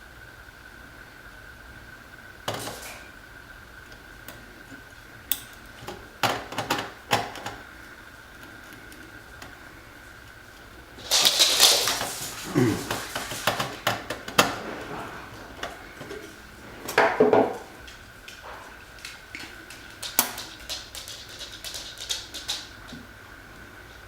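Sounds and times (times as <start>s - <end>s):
screwdriver clicking on metal terminals: 5.3s - 5.6s.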